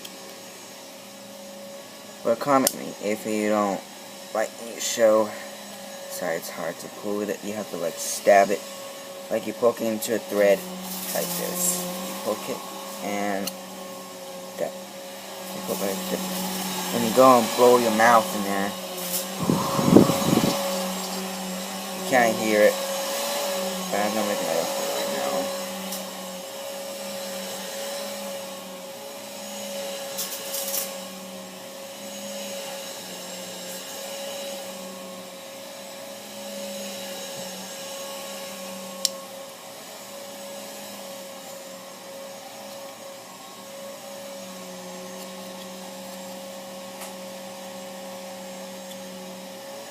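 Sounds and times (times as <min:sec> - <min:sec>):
steady whirring hum: 0:00.0 - 0:33.9.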